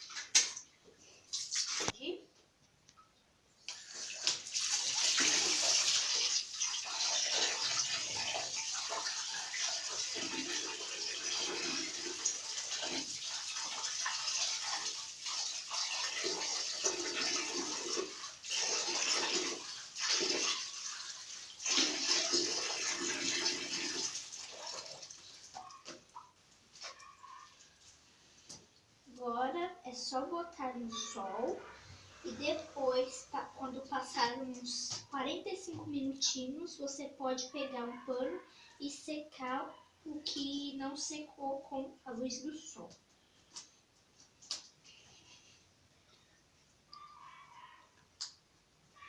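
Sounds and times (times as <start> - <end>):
water splashing over fan grille: 3.7 - 26.3.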